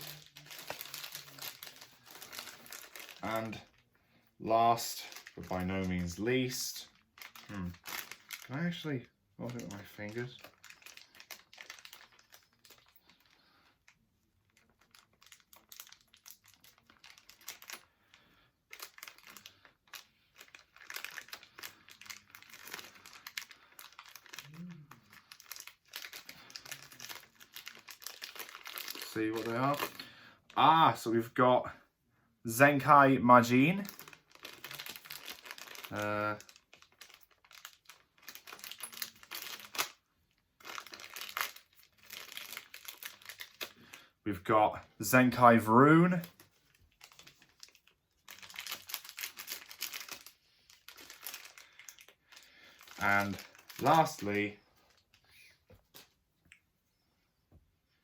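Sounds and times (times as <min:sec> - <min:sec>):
plastic packaging crinkling: 0:00.0 - 0:03.8, 0:04.7 - 0:31.1, 0:32.5 - 0:44.2, 0:45.0 - 0:56.2.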